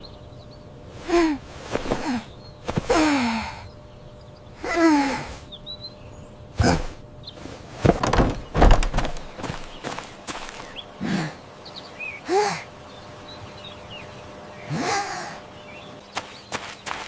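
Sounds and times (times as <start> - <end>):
person sighing breathily: 1.0 - 3.7, 4.6 - 5.4, 12.3 - 12.7, 14.7 - 15.4
sharp knocks: 7.8 - 10.6.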